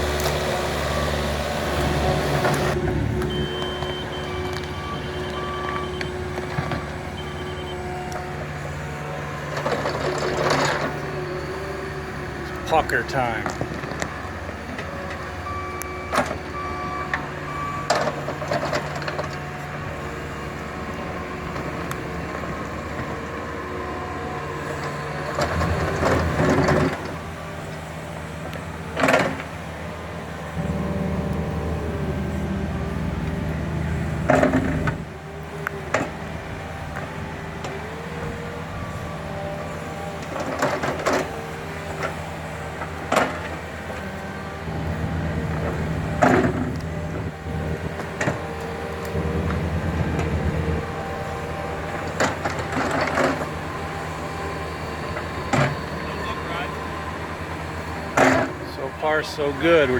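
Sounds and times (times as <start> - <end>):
excavator engine under load: 0.0 - 59.9.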